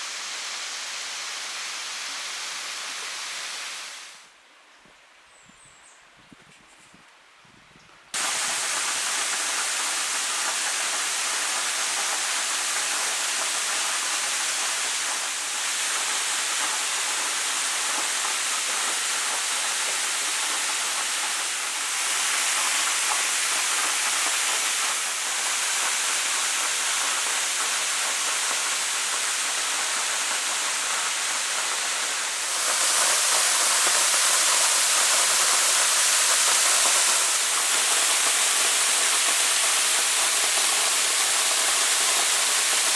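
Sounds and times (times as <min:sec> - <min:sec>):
waterfall rushing: 0:08.2 - 0:27.3, 0:28.9 - 0:42.9.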